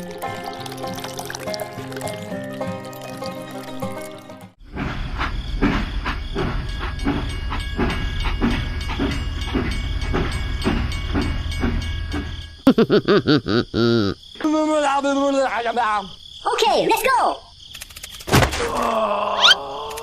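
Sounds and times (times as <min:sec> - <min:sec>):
train rumbling on rails: 0:04.6 - 0:12.6
rail clacks: 0:04.8 - 0:12.6.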